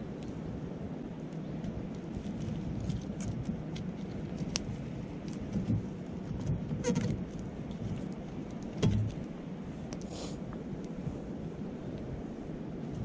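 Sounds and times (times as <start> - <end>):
campfire crackling and popping: 1.2 - 11.0.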